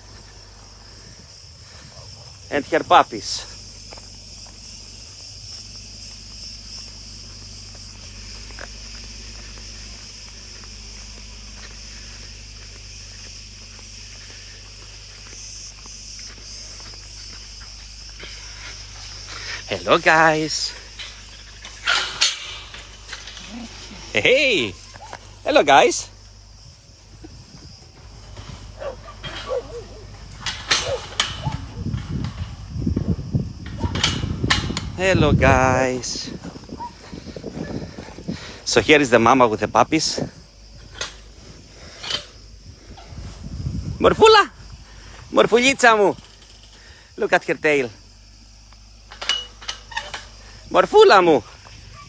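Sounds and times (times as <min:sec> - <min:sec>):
insects chirring: 0:00.0 - 0:52.0
sharp rustling knocks: 0:17.0 - 0:39.3
dogs whining and yipping: 0:28.2 - 0:32.0, 0:36.8 - 0:38.3.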